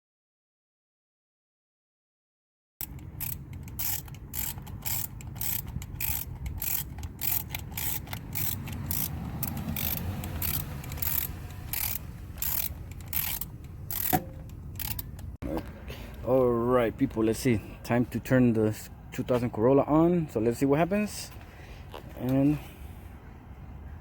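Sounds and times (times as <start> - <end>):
ratchet wrench clicking: 2.8 - 15.4.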